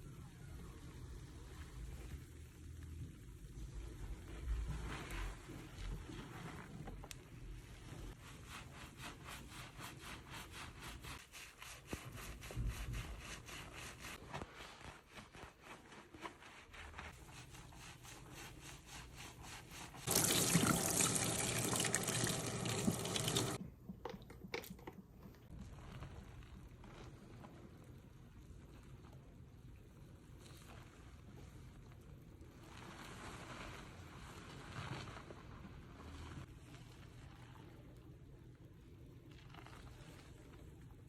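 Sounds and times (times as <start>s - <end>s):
water spraying: 20.0s - 23.6s.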